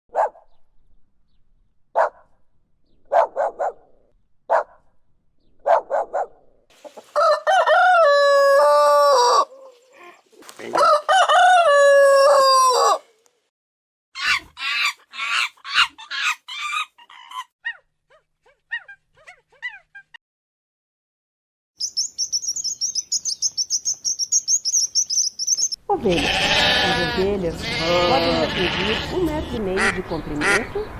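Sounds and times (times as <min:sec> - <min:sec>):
rooster crowing: 0:07.1 - 0:09.7, 0:10.7 - 0:13.2
chickens clucking: 0:29.2 - 0:30.9.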